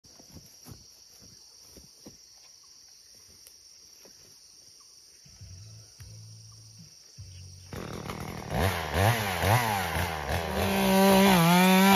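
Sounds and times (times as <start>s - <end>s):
chainsaw idling: 7.7s - 11.9s.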